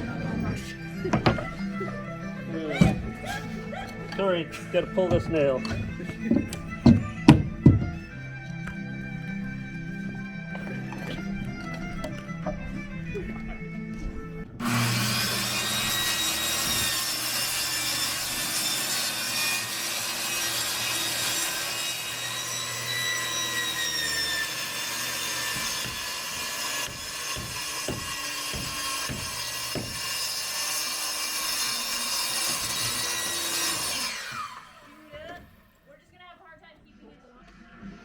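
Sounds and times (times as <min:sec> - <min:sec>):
electric saw cutting wood: 0:00.0 - 0:09.1, 0:14.6 - 0:35.8
sharp knocks: 0:05.1 - 0:08.0, 0:25.5 - 0:30.2.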